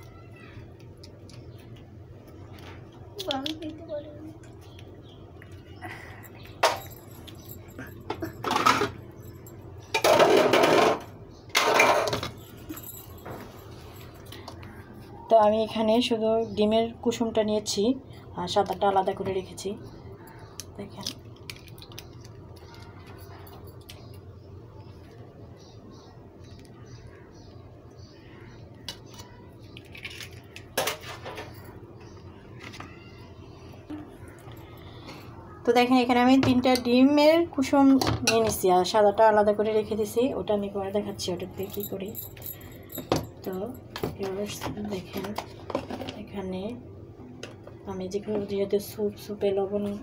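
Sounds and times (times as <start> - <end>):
kitchen bowls and utensils clinking: 6.4 - 14.7, 37.8 - 39.1
eggs cracked over bowl: 28.9 - 31.2.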